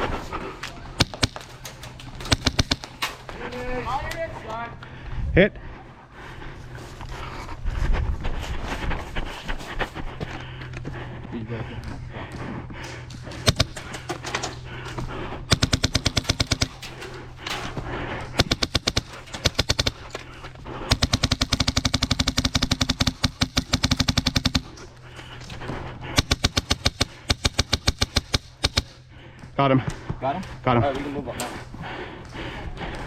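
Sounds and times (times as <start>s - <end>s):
airsoft guns firing: 1.0s - 3.3s, 13.4s - 14.3s, 15.5s - 17.3s, 18.3s - 24.9s, 26.1s - 29.0s.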